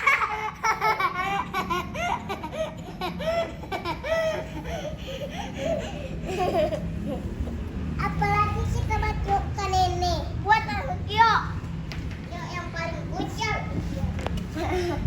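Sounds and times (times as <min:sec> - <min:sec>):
children laughing: 0:00.0 - 0:09.1, 0:14.4 - 0:15.0.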